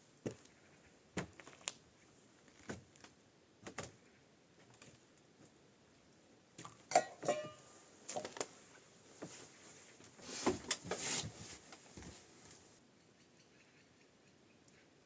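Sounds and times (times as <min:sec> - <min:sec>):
rustling or scraping: 0:07.2 - 0:12.8.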